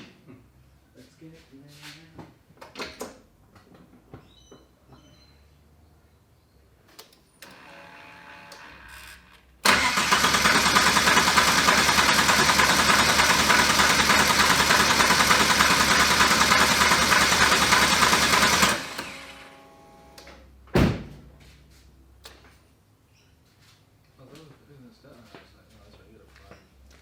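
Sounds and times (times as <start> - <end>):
starter motor whirr: 7.4 - 20.3
car engine running: 9.7 - 19.4.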